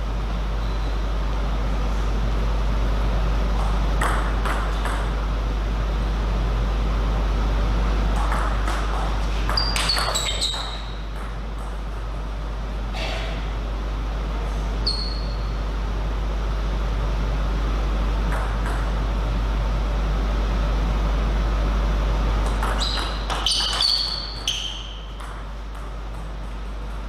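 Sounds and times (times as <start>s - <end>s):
steady low hum: 0.0s - 27.0s
table tennis ball bouncing: 3.6s - 5.2s, 8.1s - 12.0s, 18.3s - 19.0s, 22.4s - 27.0s.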